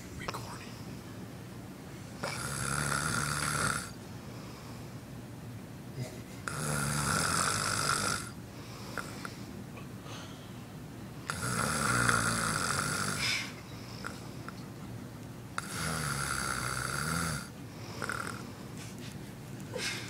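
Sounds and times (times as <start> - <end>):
man snoring: 2.2 - 4.0, 6.4 - 8.4, 11.3 - 14.2, 15.6 - 18.5
quiet breathing: 4.1 - 5.1, 8.2 - 11.4, 13.0 - 14.7, 17.4 - 20.0.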